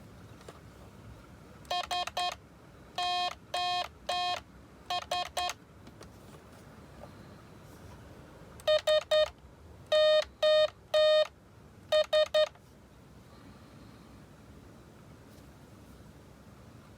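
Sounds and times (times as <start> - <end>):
buzzy morse code beeps: 1.7 - 2.4, 3.0 - 5.6, 8.6 - 12.6.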